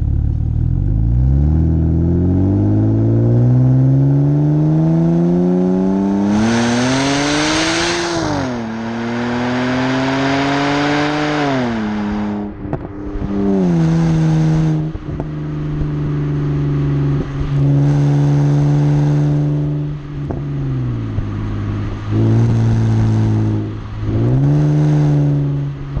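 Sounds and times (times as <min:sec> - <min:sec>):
car exhaust revving: 0:00.0 - 0:26.0
exhaust pops: 0:12.4 - 0:16.1, 0:20.2 - 0:24.2.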